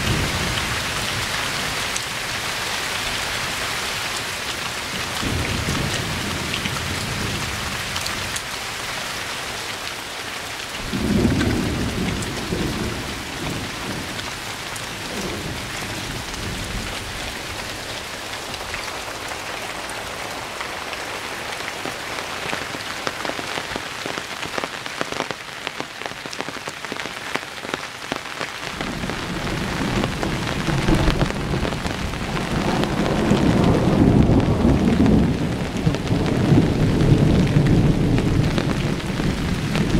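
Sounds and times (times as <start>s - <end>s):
steady rain falling: 0.0s - 39.9s
thunder rumbling: 10.8s - 20.6s, 28.7s - 39.9s.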